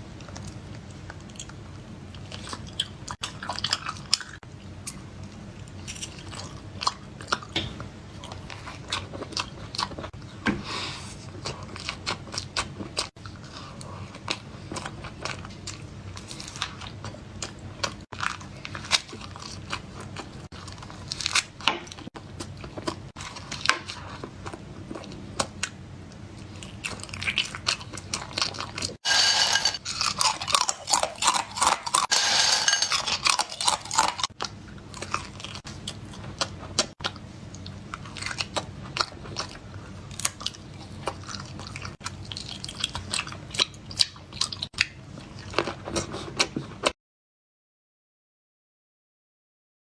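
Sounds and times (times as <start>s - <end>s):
chewing and crunching food: 0.1s - 47.0s.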